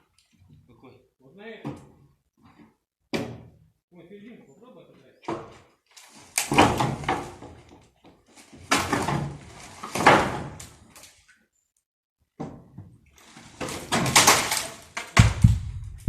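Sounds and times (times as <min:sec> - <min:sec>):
wooden boards scraping: 0:08.3 - 0:10.8, 0:13.2 - 0:15.6.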